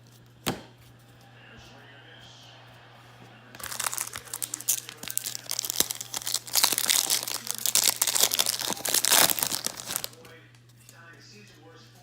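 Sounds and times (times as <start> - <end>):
foil wrapper crinkling and tearing: 3.6 - 10.3.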